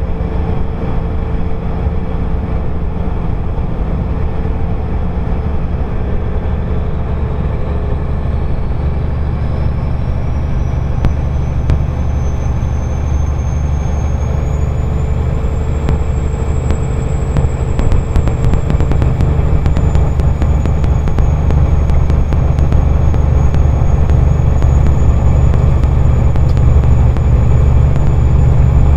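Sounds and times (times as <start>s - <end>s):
engine and road rumble: 0.0s - 28.9s
turbocharger whistle: 6.5s - 28.9s.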